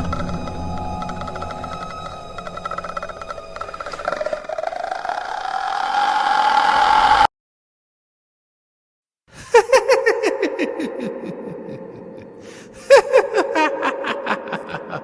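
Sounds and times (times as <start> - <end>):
evil laugh: 9.3 - 15.0.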